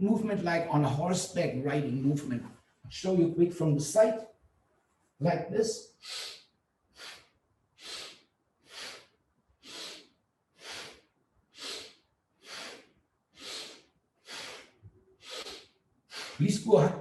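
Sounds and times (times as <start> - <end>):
forceful breathing through nose: 6.0 - 16.4.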